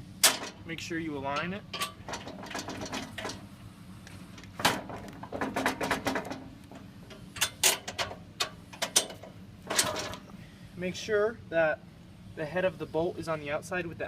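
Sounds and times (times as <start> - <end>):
metal parts knocking and clinking: 0.2 - 0.6, 1.3 - 3.4, 4.4 - 10.2.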